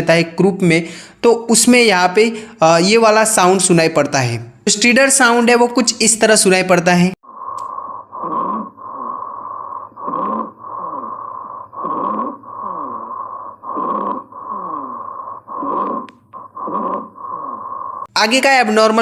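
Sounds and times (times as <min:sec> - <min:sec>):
harsh whistling breathing: 0:07.2 - 0:18.1
steady hum: 0:07.2 - 0:18.1.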